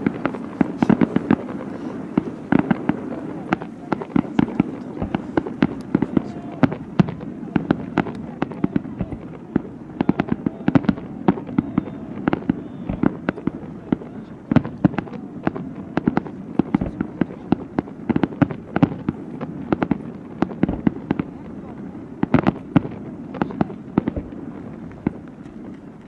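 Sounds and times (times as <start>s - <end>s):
fireworks bangs and crackles: 0.0s - 26.0s.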